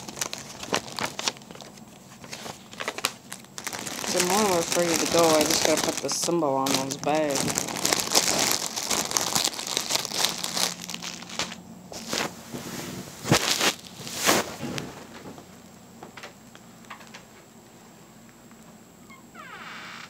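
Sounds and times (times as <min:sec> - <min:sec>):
plastic bags crinkling: 0:00.0 - 0:15.4.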